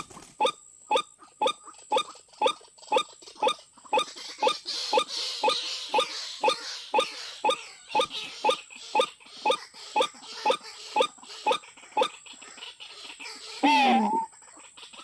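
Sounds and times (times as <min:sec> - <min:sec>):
bird croaking call: 0:13.5 - 0:14.3
bird call sliding in pitch: 0:13.6 - 0:14.3.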